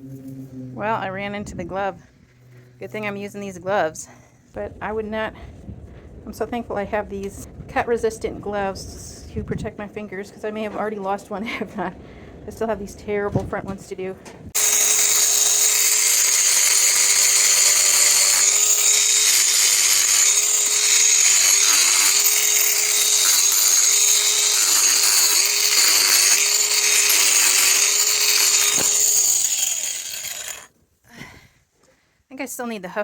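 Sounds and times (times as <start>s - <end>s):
angle grinder whining: 14.6s - 30.7s.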